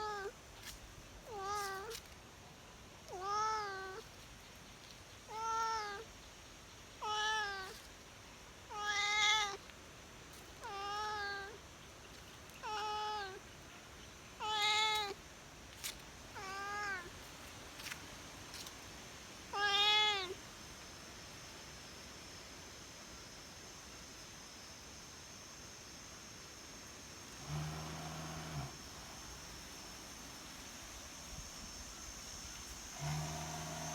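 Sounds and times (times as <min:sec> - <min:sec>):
cat meowing: 0:03.1 - 0:04.0, 0:05.3 - 0:06.1, 0:07.0 - 0:07.8, 0:08.7 - 0:09.6, 0:10.6 - 0:11.6, 0:12.6 - 0:13.4, 0:14.4 - 0:15.2, 0:16.4 - 0:17.1, 0:19.5 - 0:20.4.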